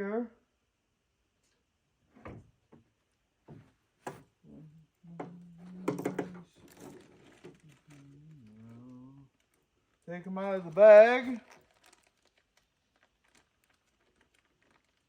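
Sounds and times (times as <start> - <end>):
clicks and knocks of handling: 5.2 - 8.1
rustling crackle: 5.7 - 15.0.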